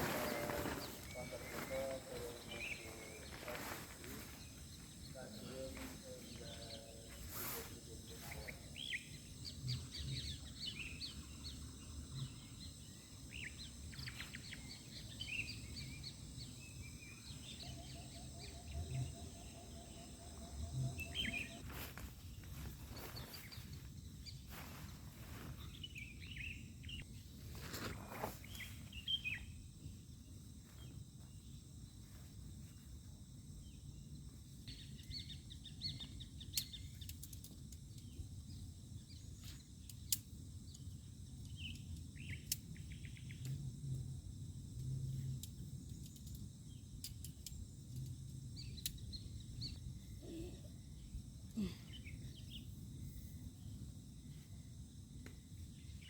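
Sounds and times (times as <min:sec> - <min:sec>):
high insect whine: 0:00.0 - 0:56.0.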